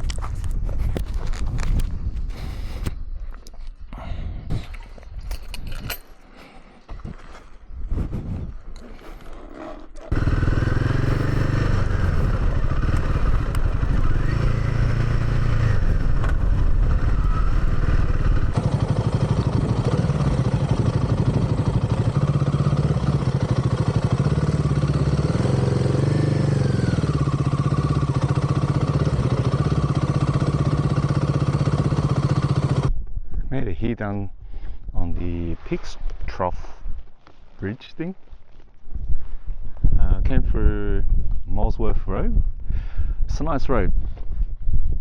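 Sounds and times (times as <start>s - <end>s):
motorcycle engine revving: 9.2s - 32.9s.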